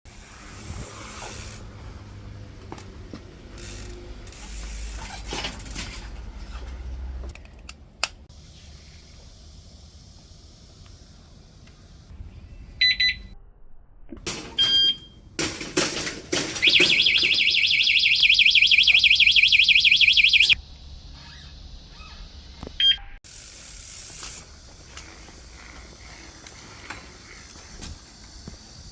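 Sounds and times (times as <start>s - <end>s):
bicycle mechanical clicks: 3.5s - 5.7s, 23.3s - 28.5s
short beep: 16.6s - 20.6s
warbling alarm siren: 16.6s - 20.6s.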